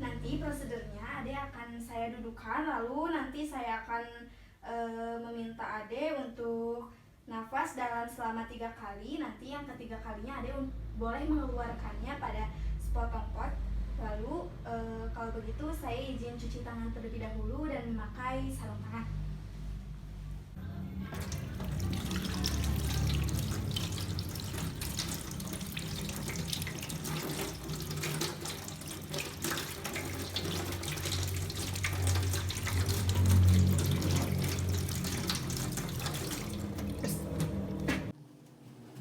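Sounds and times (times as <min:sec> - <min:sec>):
tap running into sink: 0:21.2 - 0:38.1
water splashing over hands: 0:21.2 - 0:38.1.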